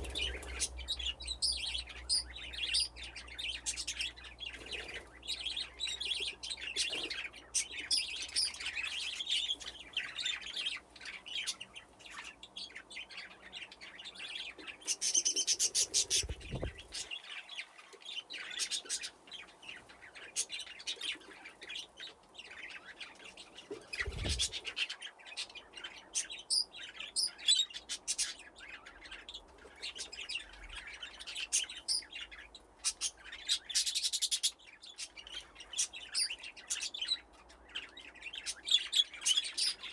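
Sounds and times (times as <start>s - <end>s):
budgerigars chirping and chattering: 0.0s - 39.9s.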